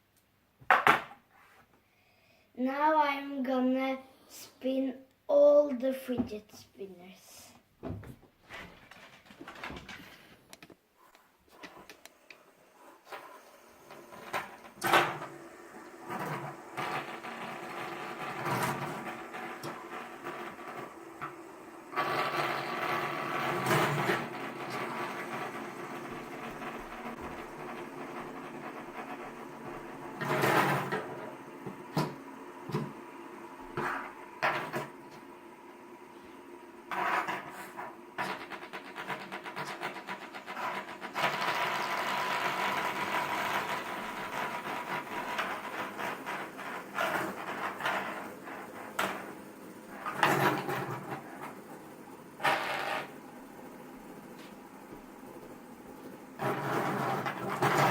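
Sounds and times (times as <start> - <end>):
fidget spinners whirring: 11.0 - 57.9.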